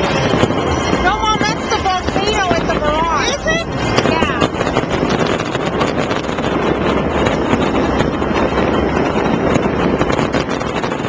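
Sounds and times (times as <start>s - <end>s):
fireworks rumbling and crackling: 0.0s - 11.0s.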